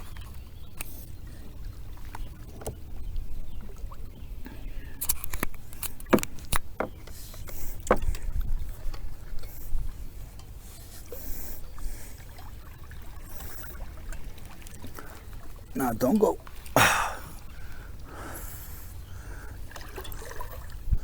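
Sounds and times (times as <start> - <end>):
light water sounds: 0.0 - 21.0
knocks and clunks in a kayak: 1.4 - 10.6.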